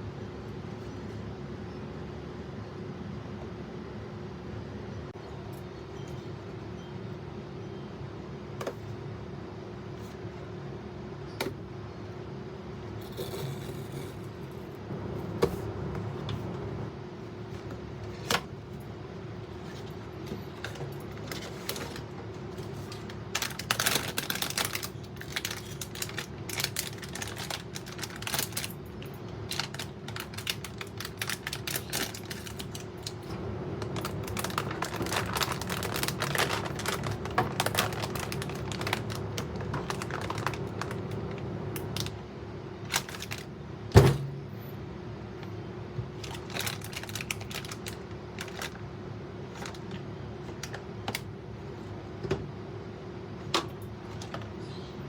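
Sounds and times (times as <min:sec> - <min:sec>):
steady low hum: 0:00.0 - 0:55.0
plastic wrapping crackling: 0:20.6 - 0:42.2, 0:42.9 - 0:43.5, 0:46.2 - 0:48.8.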